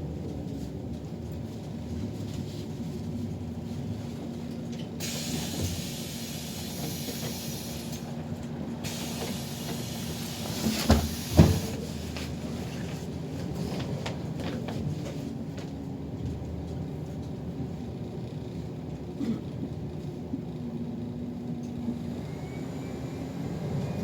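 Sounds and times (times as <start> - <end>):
bus engine rumble: 0.0 - 24.0
bus air hiss: 5.0 - 12.1.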